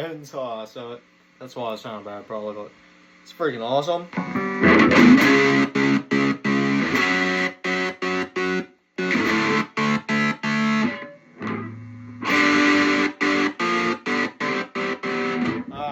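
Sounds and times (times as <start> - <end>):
chopped distorted guitar chords: 4.1 - 15.9.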